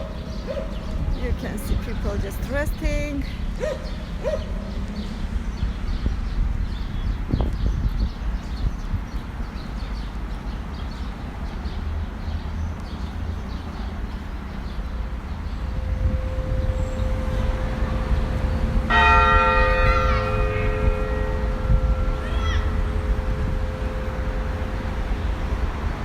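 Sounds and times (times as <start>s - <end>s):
low outdoor rumble: 12.8s - 26.0s
church bell ringing: 15.1s - 26.0s.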